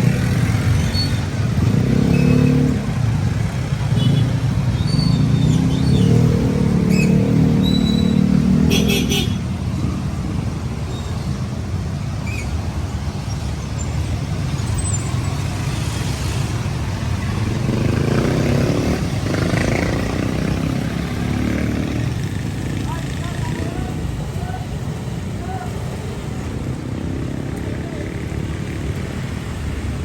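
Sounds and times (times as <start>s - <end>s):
traffic rumble: 0.0s - 30.0s.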